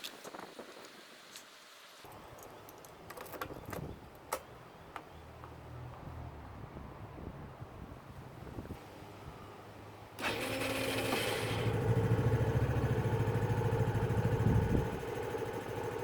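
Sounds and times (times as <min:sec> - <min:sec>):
scooter engine starting and running: 0:10.2 - 0:16.0.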